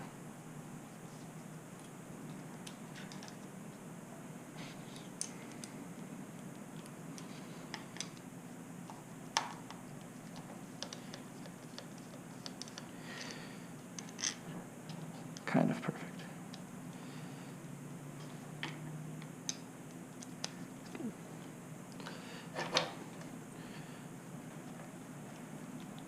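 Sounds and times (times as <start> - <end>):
hand tools clicking and tapping: 9.4 - 12.9.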